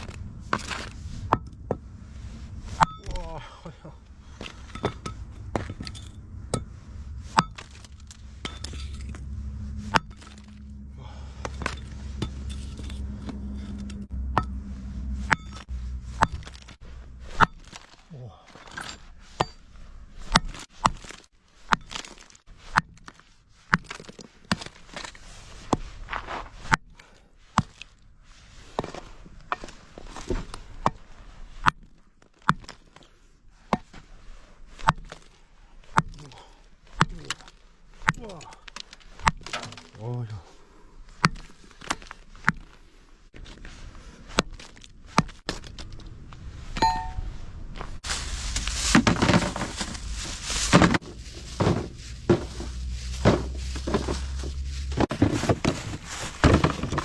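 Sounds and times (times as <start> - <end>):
low rumble: 0.0 - 17.5, 45.9 - 55.1
hammer smashing coal: 15.3 - 19.6, 35.9 - 40.2, 48.4 - 57.0.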